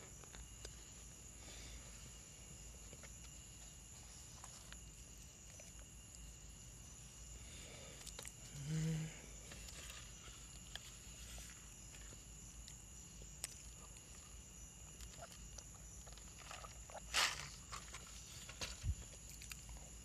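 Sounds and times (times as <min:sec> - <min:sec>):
chewing and crunching: 0:02.8 - 0:06.5, 0:07.9 - 0:08.6, 0:09.4 - 0:20.0
low voice hum: 0:08.4 - 0:09.5.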